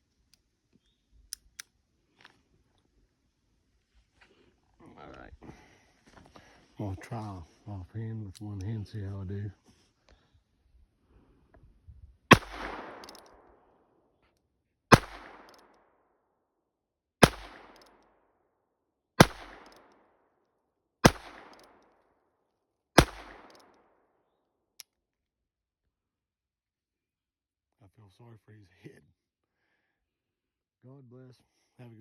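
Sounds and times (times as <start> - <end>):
revolver shots with echo: 12.3 - 13.2, 14.9 - 15.5, 17.2 - 17.8, 19.2 - 19.8, 21.1 - 21.6, 23.0 - 23.5.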